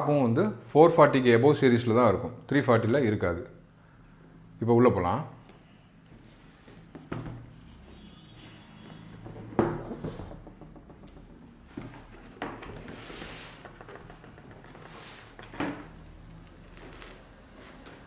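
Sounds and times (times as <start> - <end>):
knocks on cardboard box: 9.4 - 12.6
packaging rustling: 12.0 - 18.0.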